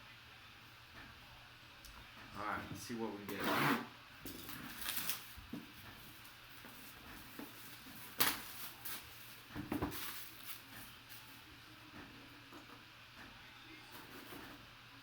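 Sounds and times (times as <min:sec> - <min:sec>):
crinkling and knocks: 0:04.2 - 0:11.3
packaging rustling: 0:04.3 - 0:05.4, 0:06.1 - 0:11.4.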